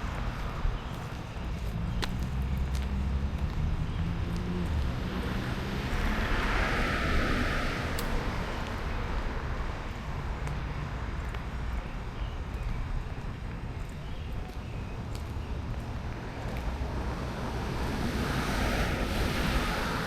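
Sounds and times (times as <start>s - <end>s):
car engine hum: 0.0s - 11.2s
tyre noise on road: 0.0s - 20.0s.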